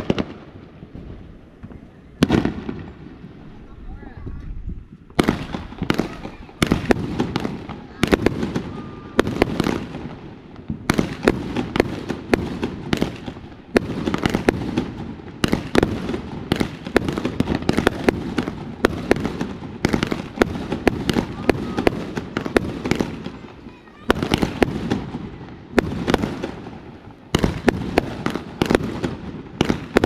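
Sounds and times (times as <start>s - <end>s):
fireworks bangs and crackles: 0.0s - 30.0s.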